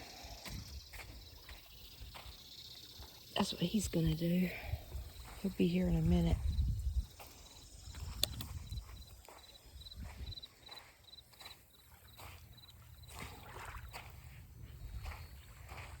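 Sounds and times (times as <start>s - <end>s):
footsteps on sand: 0.1s - 16.0s
wind rumbling on microphone: 3.8s - 10.4s, 13.2s - 16.0s.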